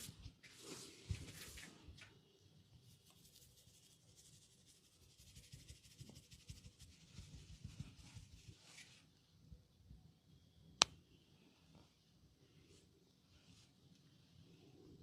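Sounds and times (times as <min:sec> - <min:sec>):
fingers rubbing hair and scalp: 0:03.0 - 0:08.9.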